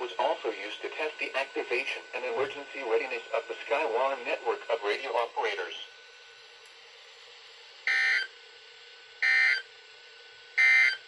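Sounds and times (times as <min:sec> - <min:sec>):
faint radio hiss: 0:00.0 - 0:06.0
shrill buzzing data bursts: 0:09.2 - 0:09.6.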